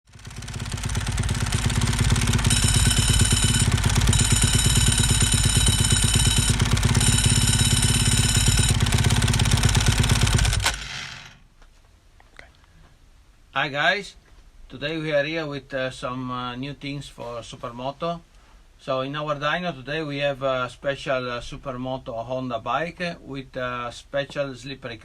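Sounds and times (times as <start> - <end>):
dry clutch rattling: 0.1 - 11.4
motorcycle engine running: 0.1 - 11.4
high whine: 1.0 - 11.1.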